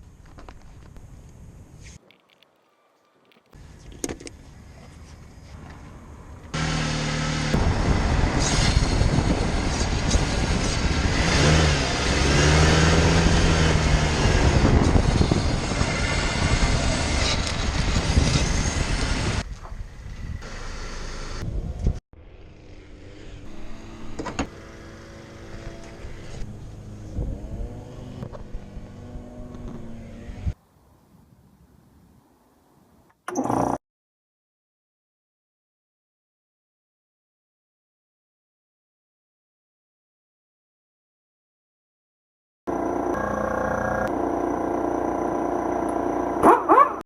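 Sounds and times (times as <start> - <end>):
road noise: 0.1 - 33.2, 42.7 - 47.0.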